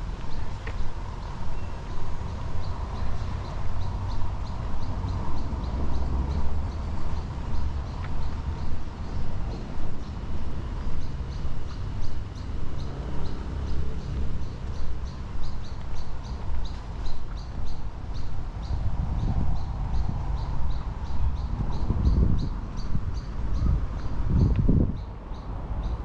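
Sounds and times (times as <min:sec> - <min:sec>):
footsteps walking: 0:00.0 - 0:02.2, 0:14.1 - 0:18.4.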